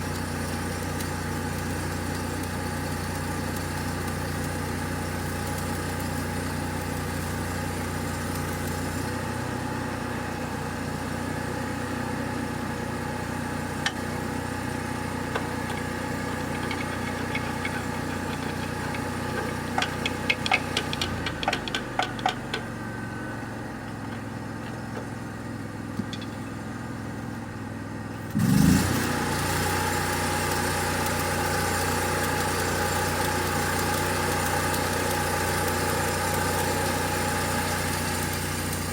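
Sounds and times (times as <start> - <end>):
engine running: 13.4 - 38.9.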